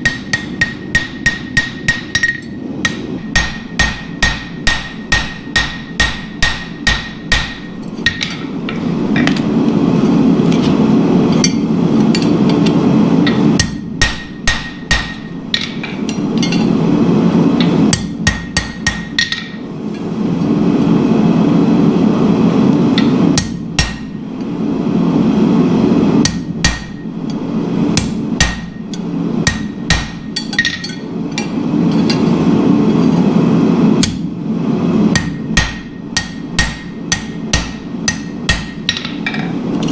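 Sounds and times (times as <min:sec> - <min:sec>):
hammer striking steel on anvil: 0:00.0 - 0:09.4, 0:11.4 - 0:16.8, 0:17.6 - 0:19.6, 0:23.0 - 0:24.2, 0:26.2 - 0:27.4, 0:28.0 - 0:32.4, 0:35.1 - 0:39.9.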